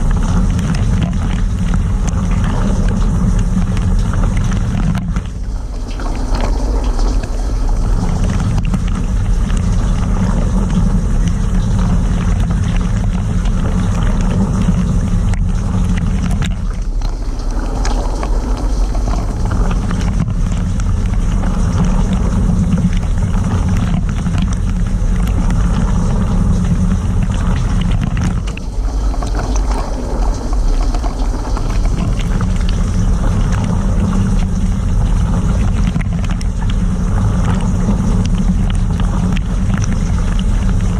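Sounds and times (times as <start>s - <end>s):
water spraying and splashing: 0.0s - 40.9s
dishwasher pump humming: 11.4s - 40.9s.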